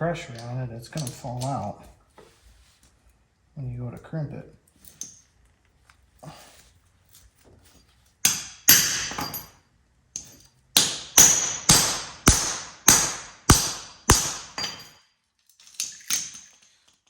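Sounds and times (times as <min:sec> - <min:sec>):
hammer striking crimp tool: 0:08.3 - 0:09.5, 0:10.2 - 0:14.9.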